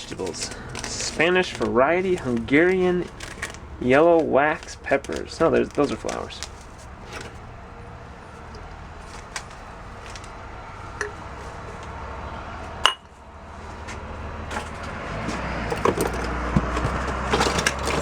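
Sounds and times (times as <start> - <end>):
glass items clinking: 0.0 - 4.0, 11.0 - 11.3, 12.8 - 13.0, 15.7 - 18.0.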